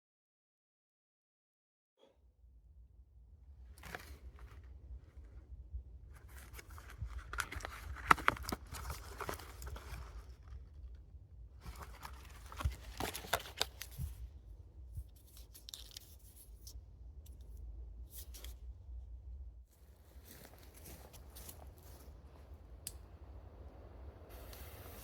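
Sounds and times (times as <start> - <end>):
rustling and crinkling handling noise: 3.8 - 5.4, 6.1 - 11.0, 11.6 - 18.6, 19.7 - 22.5.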